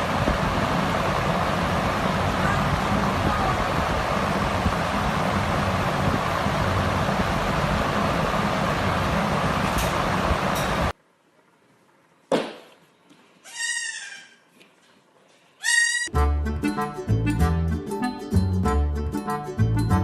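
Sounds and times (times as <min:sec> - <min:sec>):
steady rushing noise: 0:00.0 - 0:11.0.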